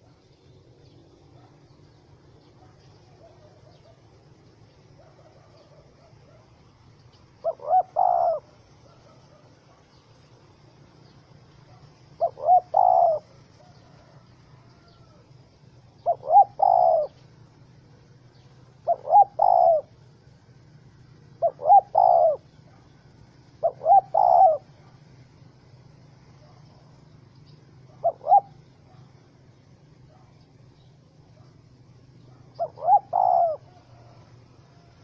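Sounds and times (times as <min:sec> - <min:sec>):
dove cooing: 0:00.0 - 0:20.2, 0:21.2 - 0:25.0, 0:25.8 - 0:35.0.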